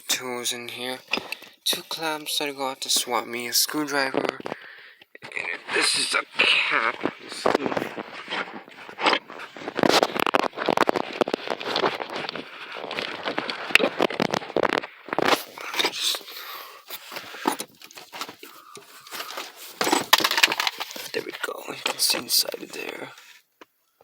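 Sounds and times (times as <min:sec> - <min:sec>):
small tools and plastic parts clicking: 0:13.0 - 0:23.7.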